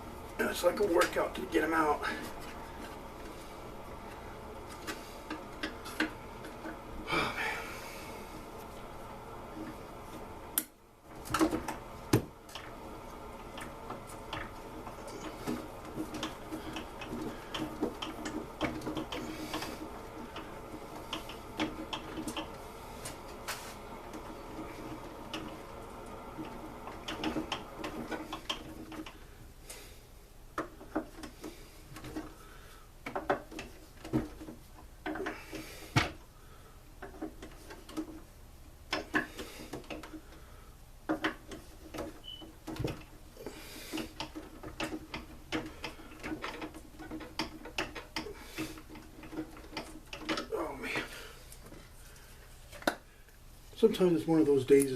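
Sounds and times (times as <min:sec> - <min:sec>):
steady hum: 0:00.0 - 0:54.9.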